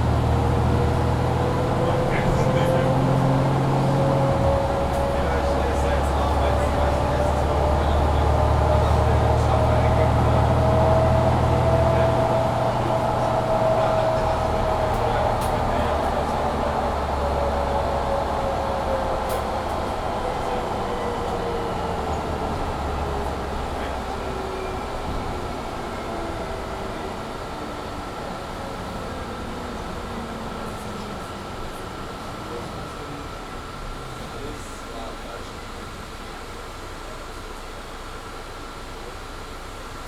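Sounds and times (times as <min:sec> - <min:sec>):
bus engine drone with whine: 0:00.0 - 0:40.0.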